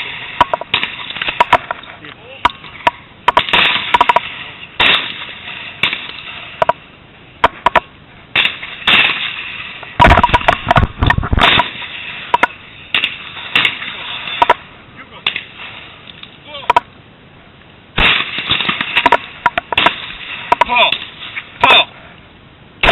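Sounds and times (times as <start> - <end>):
shotgun shots with echo: 4.8 - 6.1, 8.4 - 9.4, 18.0 - 20.3.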